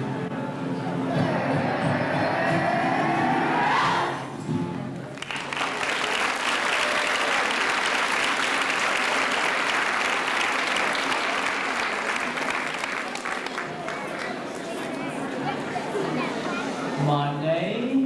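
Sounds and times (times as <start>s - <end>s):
audience applauding: 5.1s - 15.1s.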